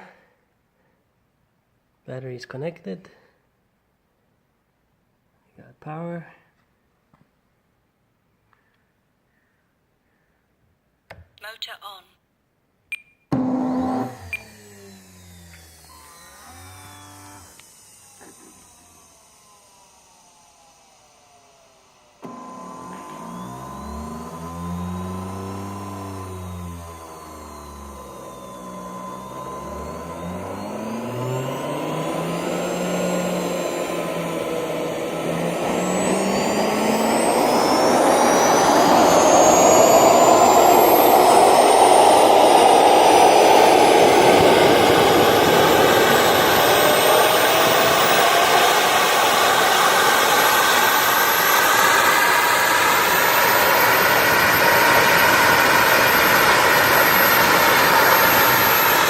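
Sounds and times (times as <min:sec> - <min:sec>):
jet turbine spooling up: 0:13.4 - 0:59.0.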